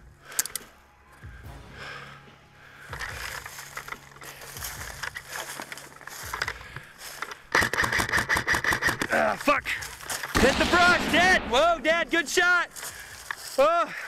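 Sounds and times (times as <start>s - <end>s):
twigs rustling and crackling: 2.8s - 14.0s
airsoft gun firing: 7.5s - 9.1s, 10.3s - 11.9s.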